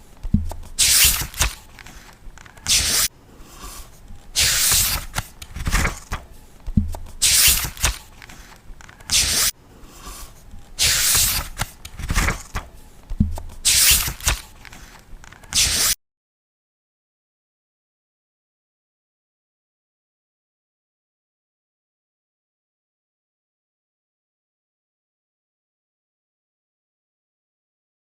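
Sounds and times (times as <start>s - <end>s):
book pages turning: 0.1s - 16.0s
soft paper rustles: 0.1s - 16.0s.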